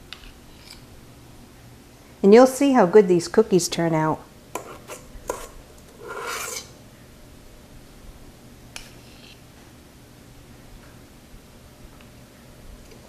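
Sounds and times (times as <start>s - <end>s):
spoon scraping batter: 4.6s - 6.8s.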